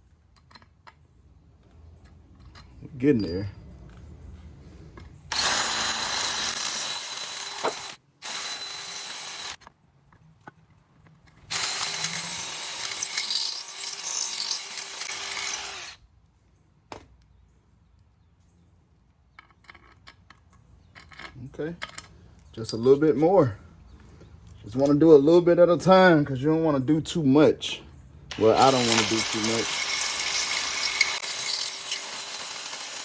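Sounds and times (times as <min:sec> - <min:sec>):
power tool grinding aluminum: 0:05.3 - 0:09.6, 0:11.5 - 0:16.0, 0:28.3 - 0:33.0.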